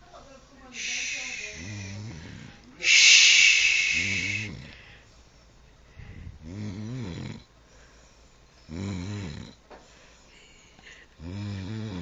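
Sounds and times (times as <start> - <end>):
woman snoring: 0.8 - 4.8, 6.3 - 7.5, 8.7 - 9.6, 11.2 - 12.0.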